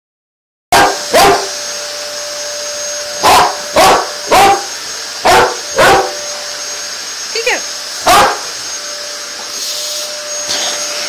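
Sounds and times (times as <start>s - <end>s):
dog barking: 0.7s - 1.5s, 3.2s - 6.2s, 8.0s - 8.5s
vacuum cleaner whining: 0.7s - 11.0s.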